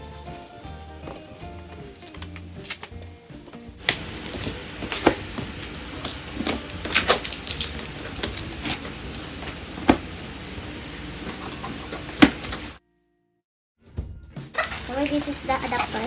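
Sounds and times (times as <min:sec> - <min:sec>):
packaging knocks and rustling: 0:03.8 - 0:10.5.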